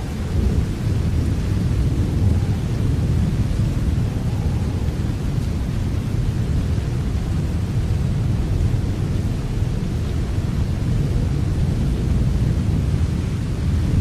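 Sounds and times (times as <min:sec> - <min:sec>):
heavy rain: 0:00.0 - 0:14.0.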